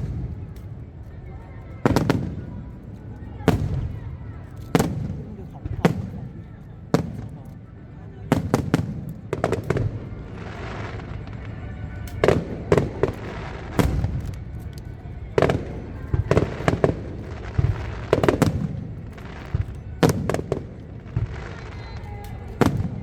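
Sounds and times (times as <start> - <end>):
firework shell bursts: 8.3 - 23.0.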